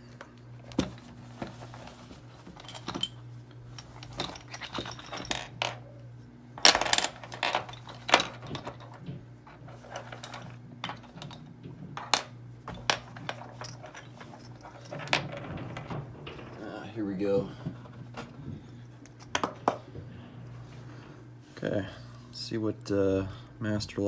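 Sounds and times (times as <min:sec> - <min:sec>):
metal parts clinking on tabletop: 0:03.8 - 0:05.8
short rattle: 0:12.7 - 0:21.3.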